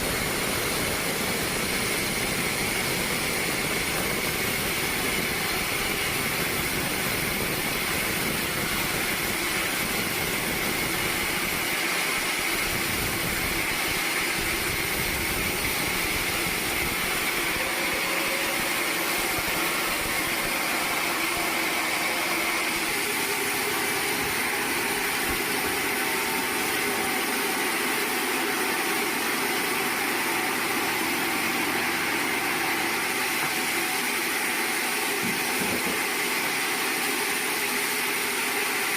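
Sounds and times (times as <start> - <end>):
sawmill machinery running: 0.0 - 38.9.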